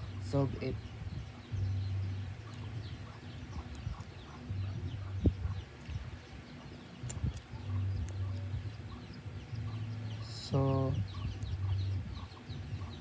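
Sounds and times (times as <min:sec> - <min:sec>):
low hum: 0:00.0 - 0:13.0
chickens clucking: 0:02.3 - 0:09.9, 0:10.7 - 0:13.0.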